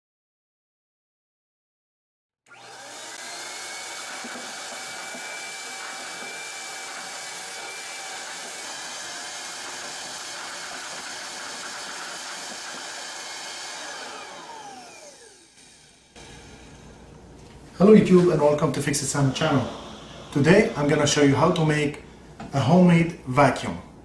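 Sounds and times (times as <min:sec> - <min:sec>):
vacuum cleaner motor whining: 0:02.5 - 0:21.3.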